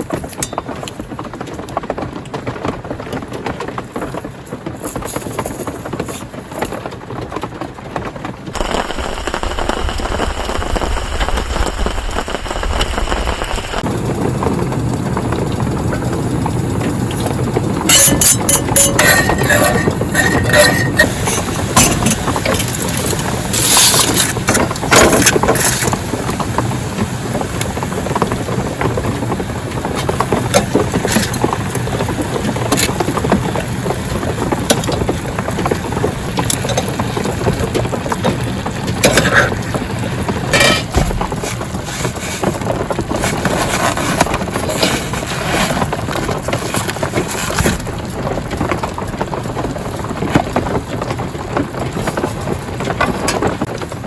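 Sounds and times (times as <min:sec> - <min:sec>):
rain falling on a tarp: 0:00.0 - 0:54.0
knocks and clinks: 0:17.9 - 0:23.2, 0:40.5 - 0:41.4.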